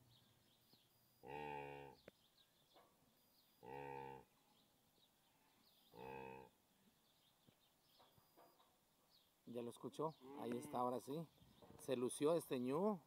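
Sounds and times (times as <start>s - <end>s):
wildebeest calling: 10.2s - 11.0s.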